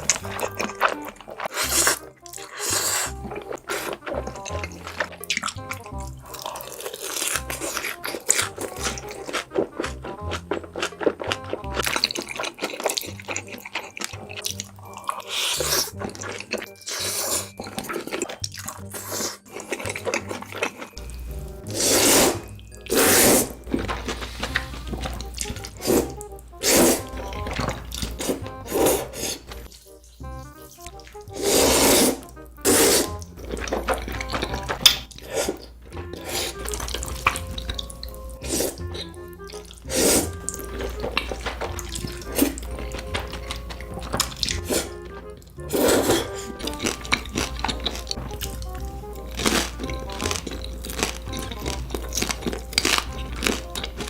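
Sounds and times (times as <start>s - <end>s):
background music: 0.0s - 54.0s
wet noodle slurping: 0.0s - 54.0s.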